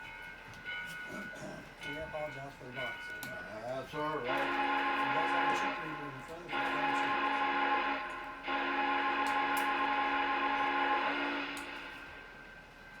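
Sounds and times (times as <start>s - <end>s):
electronic steam whistle chord: 7.1s - 12.4s.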